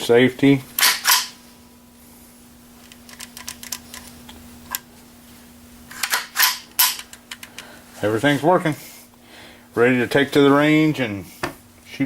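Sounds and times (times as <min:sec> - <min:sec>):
faint steady hum: 0:00.0 - 0:12.0
rifle mechanism clicking: 0:00.8 - 0:01.3.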